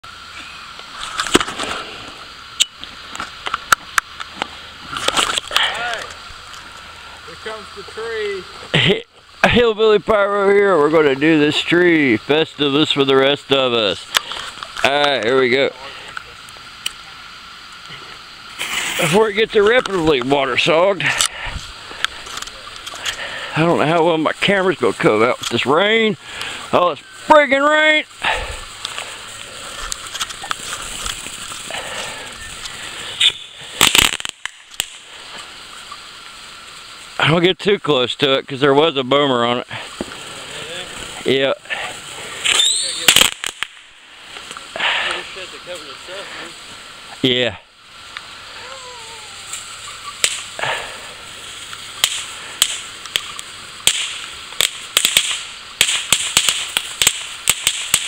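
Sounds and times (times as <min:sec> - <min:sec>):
fireworks crackles: 0:00.0 - 0:58.0
rain hiss: 0:00.0 - 0:58.0
fireworks bangs: 0:18.5 - 0:23.2, 0:26.7 - 0:35.5, 0:39.8 - 0:44.6, 0:49.0 - 0:58.0.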